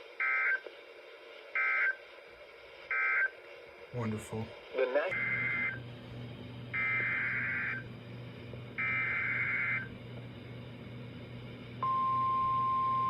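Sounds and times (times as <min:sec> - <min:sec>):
steady warning alarm tone: 0:00.2 - 0:00.6, 0:01.6 - 0:02.0, 0:02.9 - 0:03.3, 0:05.1 - 0:05.9, 0:06.7 - 0:07.9, 0:08.8 - 0:10.0, 0:11.8 - 0:13.0.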